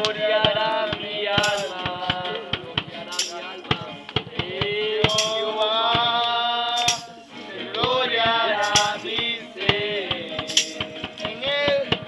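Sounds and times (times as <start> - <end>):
shaker clicks: 1.4 - 1.9, 3.1 - 3.5, 5.1 - 5.5, 6.2 - 7.3, 8.6 - 9.3, 10.4 - 11.3.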